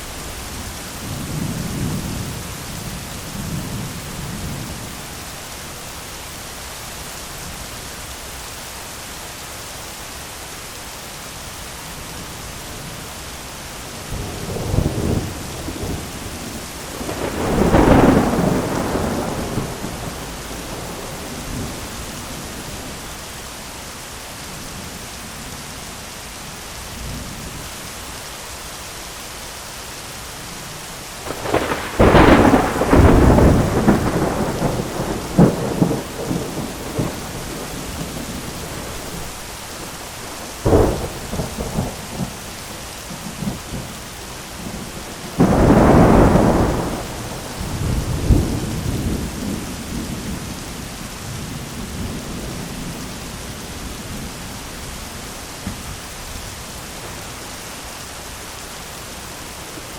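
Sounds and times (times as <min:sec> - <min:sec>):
heavy rain on umbrella: 0:00.0 - 0:59.9
thunder: 0:14.2 - 0:22.0, 0:31.2 - 0:39.3, 0:40.4 - 0:42.4, 0:44.6 - 0:50.7.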